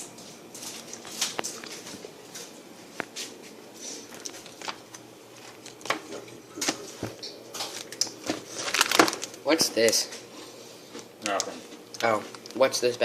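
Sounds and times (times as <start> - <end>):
ration packets crinkling: 4.1 - 10.0, 11.2 - 12.8.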